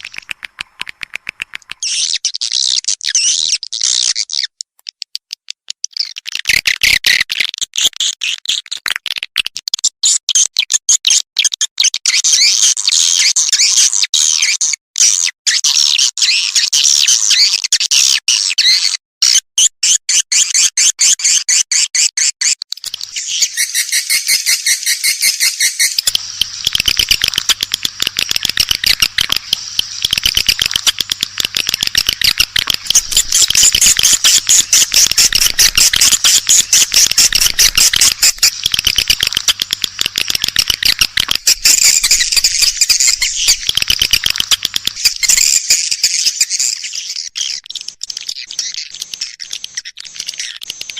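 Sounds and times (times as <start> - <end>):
swiftlets twittering: 22.9 - 50.9.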